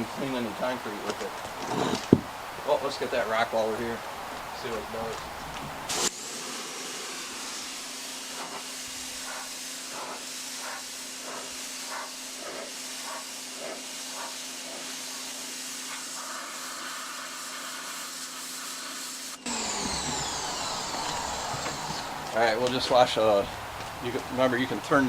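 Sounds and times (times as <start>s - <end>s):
pressure washer spray hiss: 5.9s - 23.4s
pump motor hum: 19.4s - 25.0s.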